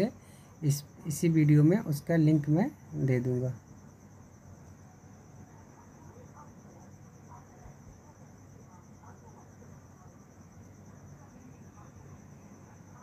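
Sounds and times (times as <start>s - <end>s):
cricket trill: 0.0s - 13.0s
low background hum: 0.0s - 13.0s.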